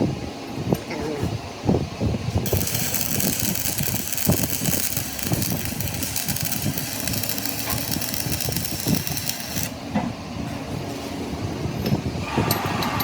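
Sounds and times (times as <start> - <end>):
workshop machinery knocking rumble: 2.4 - 10.2.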